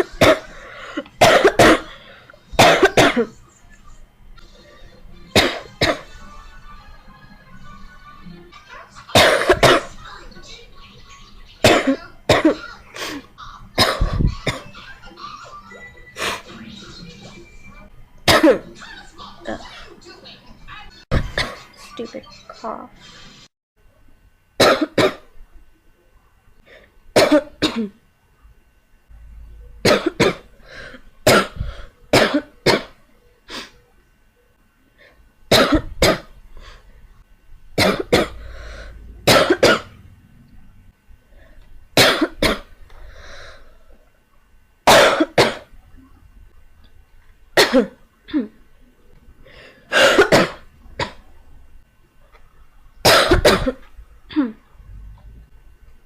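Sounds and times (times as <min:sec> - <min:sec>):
girl coughing: 0:00.0 - 0:00.6, 0:01.2 - 0:02.0, 0:02.6 - 0:03.4, 0:05.3 - 0:06.1, 0:09.1 - 0:10.0, 0:11.6 - 0:15.1, 0:18.3 - 0:18.7, 0:27.2 - 0:28.0, 0:29.8 - 0:30.5, 0:31.3 - 0:33.0, 0:35.5 - 0:36.3, 0:37.8 - 0:38.5, 0:39.3 - 0:39.9, 0:42.0 - 0:42.7, 0:44.9 - 0:45.7, 0:47.6 - 0:48.6, 0:49.9 - 0:51.2, 0:53.1 - 0:54.6.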